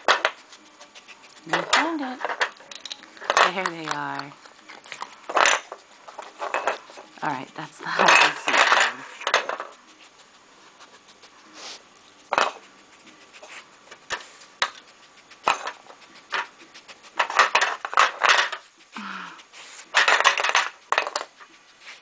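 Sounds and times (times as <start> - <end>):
toy pieces clacking and rattling: 1.5 - 6.8, 7.9 - 9.7, 17.2 - 18.6, 19.9 - 21.4.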